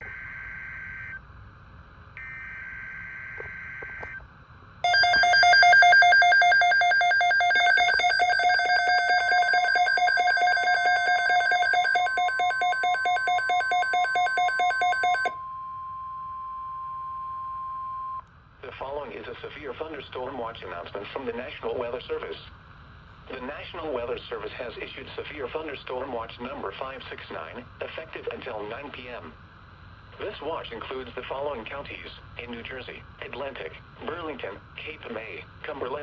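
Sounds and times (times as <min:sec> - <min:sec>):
rapidly pulsing electronic alarm: 0:02.2 - 0:04.2, 0:04.8 - 0:15.4
steady warning tone: 0:04.8 - 0:18.2.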